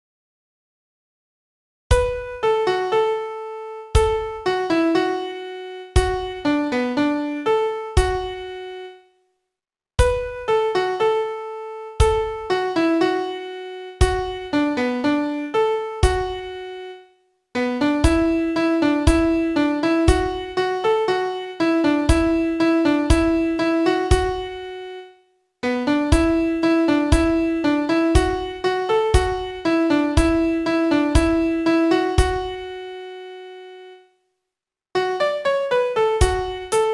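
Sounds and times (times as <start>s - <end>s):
piano melody single notes: 1.9s - 9.0s, 10.0s - 17.0s, 17.6s - 34.0s, 35.0s - 36.9s
low piano notes: 25.6s - 32.8s, 35.0s - 36.9s.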